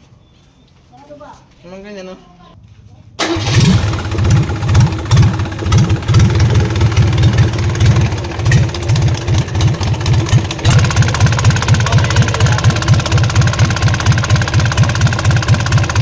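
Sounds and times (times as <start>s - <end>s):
diesel engine knocking: 3.2s - 16.0s.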